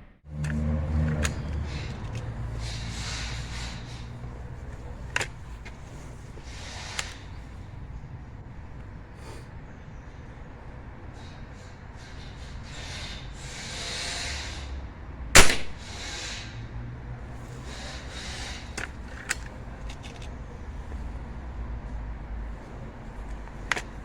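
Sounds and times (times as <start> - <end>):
air rifle shot: 15.4 - 15.9.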